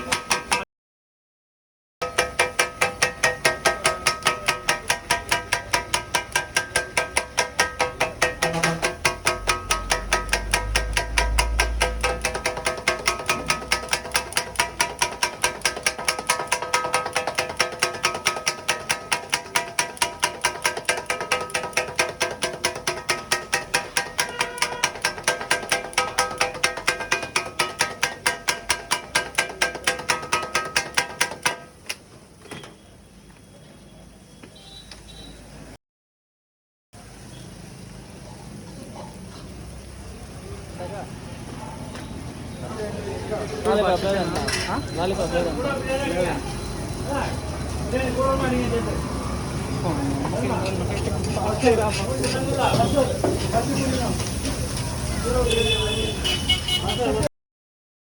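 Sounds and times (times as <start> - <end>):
metal spatulas clanging on griddle: 0.0 - 0.6, 2.0 - 31.9, 43.7 - 46.2, 50.6 - 57.0.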